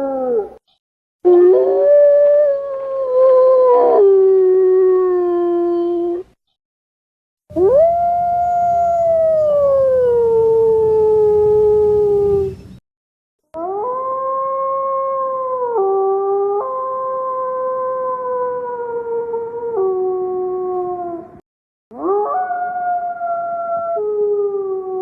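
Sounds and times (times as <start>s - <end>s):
wolf howling: 21.9s - 25.0s.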